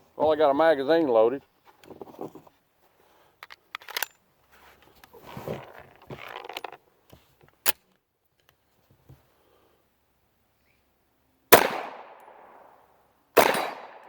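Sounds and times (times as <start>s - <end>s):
gun magazine clicks and rattling: 3.4s - 4.2s
gun action metallic snap: 13.4s - 14.0s.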